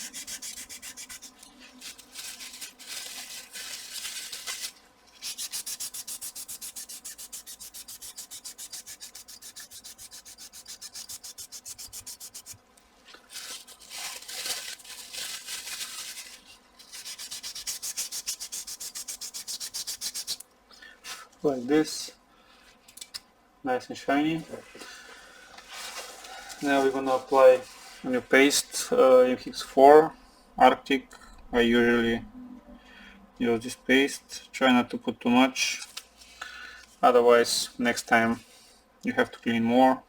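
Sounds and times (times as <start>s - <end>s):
scrubbing on metal plate: 0.0s - 12.6s, 15.4s - 20.4s.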